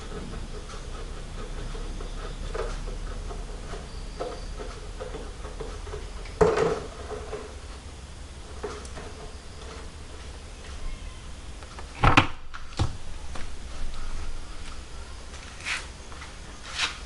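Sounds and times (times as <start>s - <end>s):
metal clunk: 4.2s - 7.6s.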